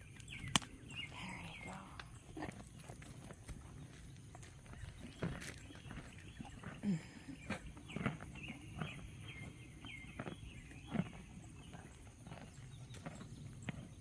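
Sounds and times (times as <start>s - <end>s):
horse crunching carrot: 2.1s - 14.0s.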